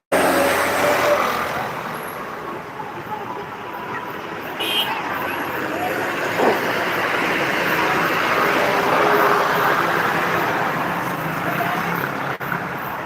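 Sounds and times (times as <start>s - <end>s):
vehicle passing by: 0.1s - 2.5s.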